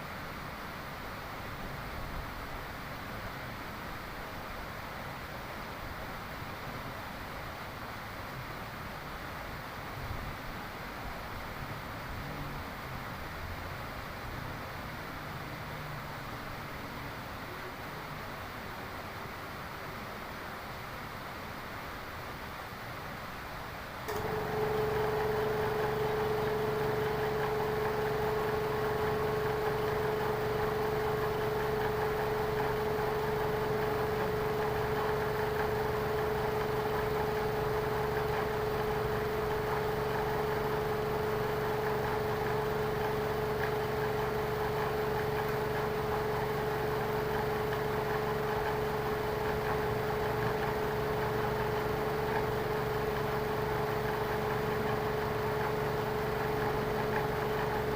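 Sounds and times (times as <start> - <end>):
motor whining: 24.1 - 57.9.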